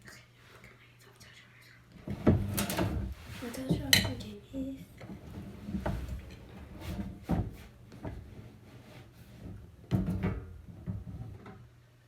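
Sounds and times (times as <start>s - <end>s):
low steady hum: 0.0s - 12.0s
knocks and rubbing while mixing slime: 2.0s - 11.6s.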